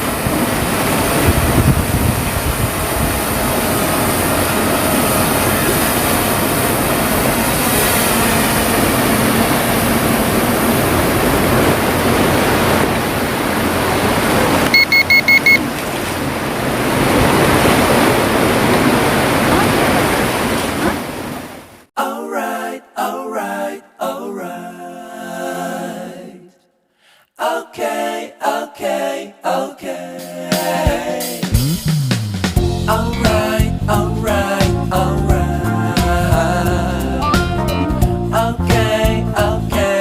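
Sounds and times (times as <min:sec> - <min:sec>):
sea surf: 0:00.0 - 0:21.9
wind: 0:00.0 - 0:21.9
short electronic beeps: 0:14.7 - 0:15.6.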